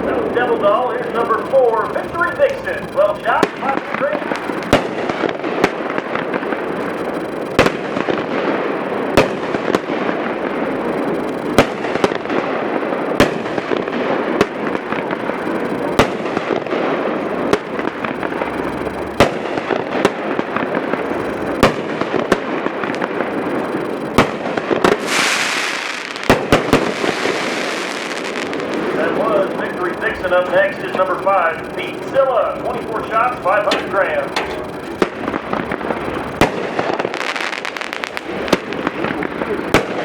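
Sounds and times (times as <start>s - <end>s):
steady rushing noise: 0.0s - 40.0s
loud hiss: 25.0s - 31.2s.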